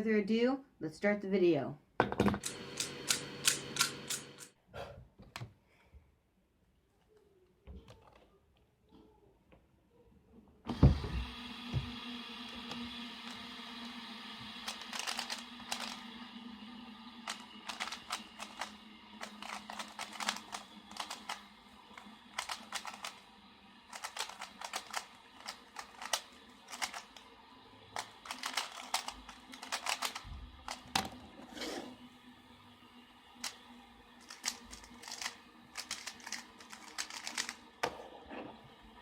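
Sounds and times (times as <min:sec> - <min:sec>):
fidget spinner whirring: 0:02.4 - 0:04.5, 0:11.1 - 0:39.0
speed cube clacking clicks: 0:02.4 - 0:04.5, 0:14.6 - 0:16.3, 0:17.2 - 0:27.3, 0:28.0 - 0:31.0, 0:33.4 - 0:33.6, 0:34.2 - 0:37.7.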